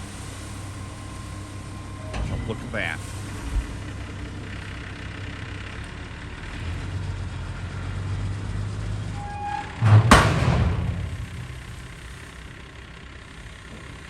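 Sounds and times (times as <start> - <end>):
heavy truck engine rumbling: 0.0 - 14.0
sudden loud burst of noise: 9.7 - 12.6.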